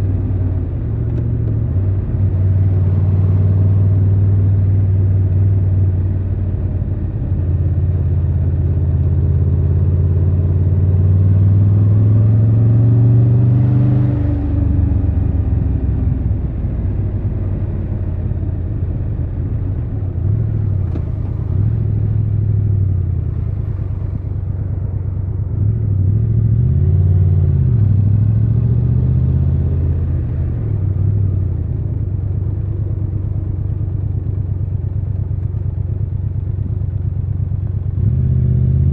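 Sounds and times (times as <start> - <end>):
motorcycle engine running: 14.7 - 26.7, 29.8 - 38.6.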